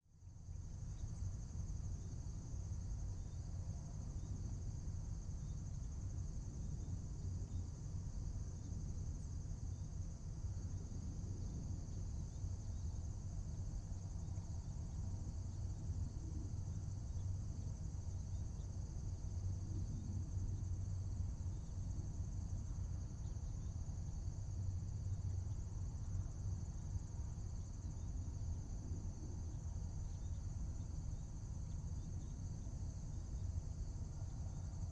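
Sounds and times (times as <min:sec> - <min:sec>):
insects chirring: 0:11.4 - 0:34.9.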